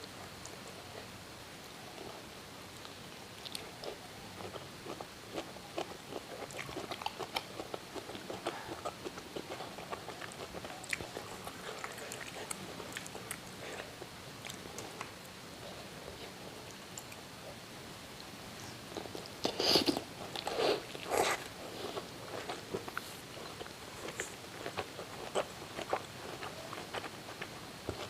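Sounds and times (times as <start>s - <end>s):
close-up chewing and biting: 3.4s - 15.1s, 18.9s - 28.0s.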